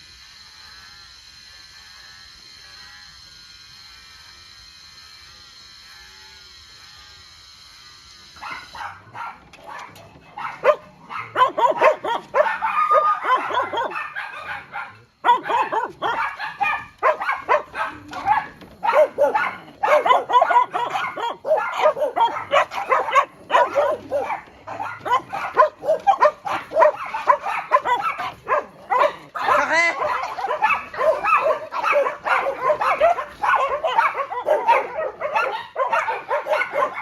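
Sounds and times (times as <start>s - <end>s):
dogs barking and yipping: 8.4s - 37.0s.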